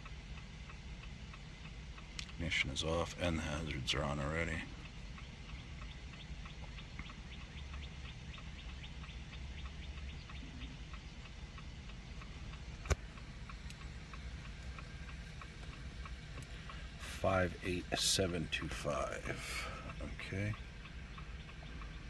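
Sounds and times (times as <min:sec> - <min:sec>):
hazard light ticking: 0:00.0 - 0:22.0
low hum: 0:00.0 - 0:22.0.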